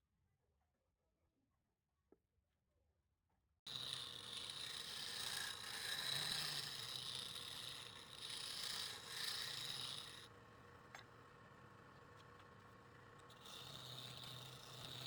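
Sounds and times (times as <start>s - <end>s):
wood lathe scraping: 3.7s - 15.0s.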